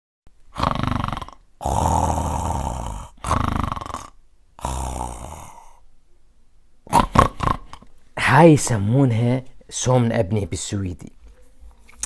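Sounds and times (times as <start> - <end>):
person snoring loudly: 0.5 - 5.8, 6.9 - 7.9.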